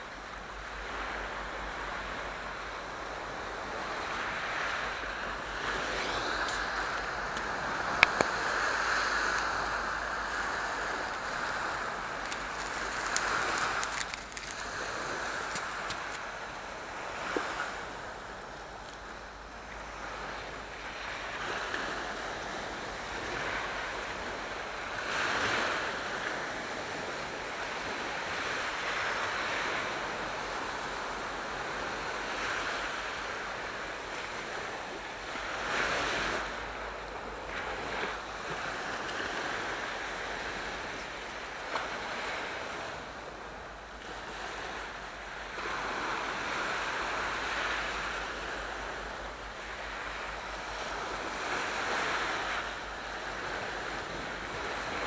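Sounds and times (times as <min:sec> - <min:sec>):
sea waves breaking: 0:00.1 - 0:55.0.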